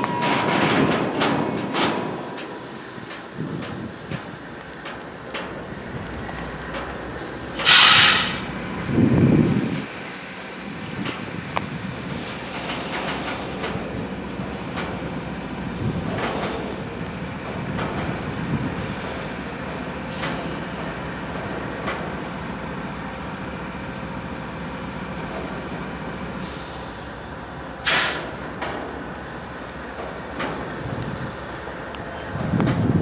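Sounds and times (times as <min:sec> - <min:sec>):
diesel locomotive idling: 0:00.0 - 0:33.0
air hiss burst: 0:07.6 - 0:08.6, 0:27.9 - 0:28.3.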